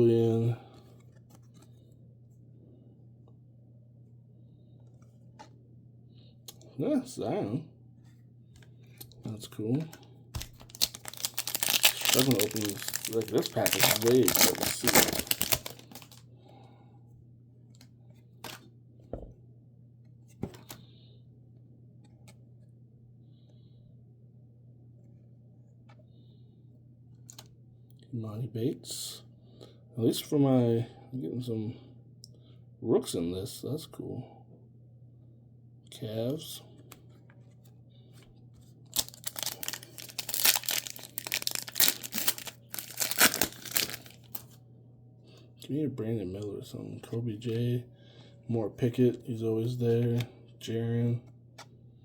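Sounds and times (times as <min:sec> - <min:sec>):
low steady hum: 0:00.0 - 0:52.0
cards rustling and tapping: 0:08.6 - 0:16.2, 0:39.0 - 0:44.5
wrapper tearing and crinkling: 0:10.4 - 0:16.2, 0:38.9 - 0:44.5.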